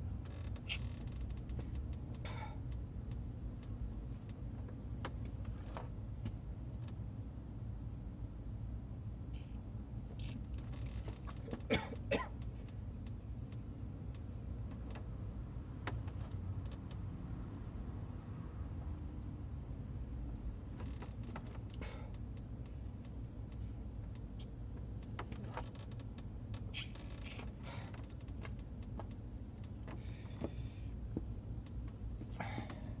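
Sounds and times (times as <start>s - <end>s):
engine coughs: 2.2s - 2.6s, 11.4s - 12.5s, 21.7s - 22.2s, 32.3s - 33.0s.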